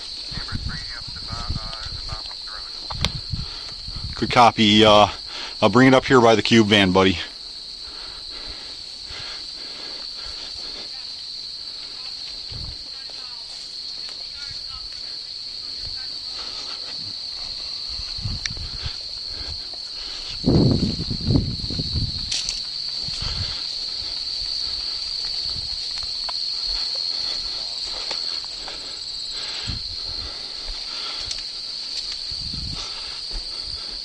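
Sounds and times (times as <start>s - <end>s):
footsteps on field: 0.0s - 4.1s, 7.3s - 34.0s
high-pitched insect chorus: 0.0s - 34.0s.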